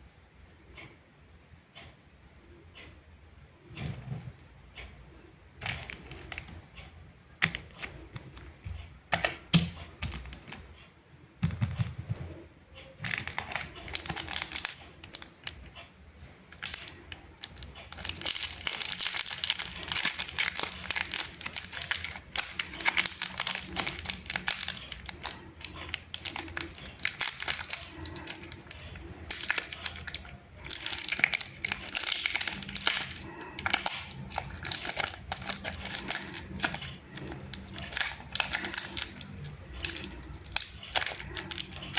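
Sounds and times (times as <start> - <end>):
wrappers crinkling and tearing: 5.6 - 6.6, 13.0 - 41.9.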